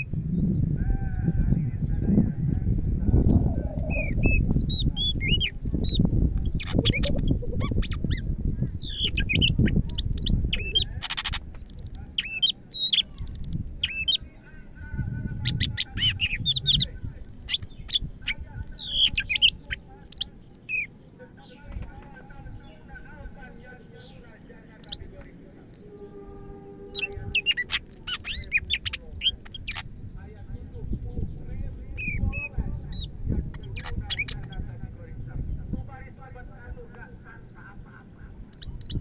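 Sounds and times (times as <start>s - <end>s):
bird singing continuous song: 0.0s - 39.0s
low rumble: 0.1s - 12.1s.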